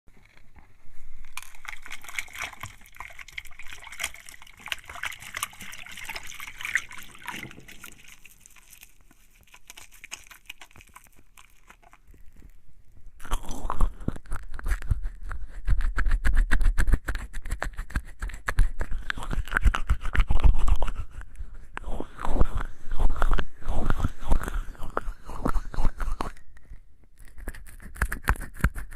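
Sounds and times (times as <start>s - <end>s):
hands washing with soap: 1.2s - 12.4s.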